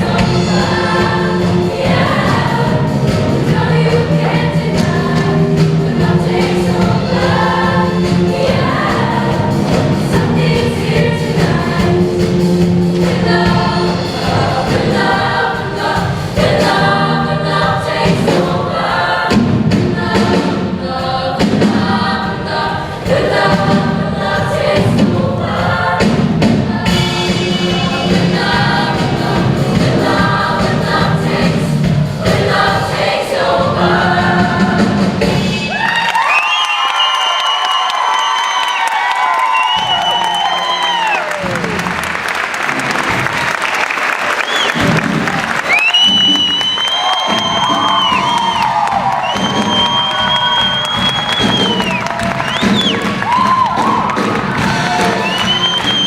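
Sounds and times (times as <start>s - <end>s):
backing instruments: 0.0s - 35.8s, 39.6s - 56.0s
choir singing pop song: 0.0s - 35.8s.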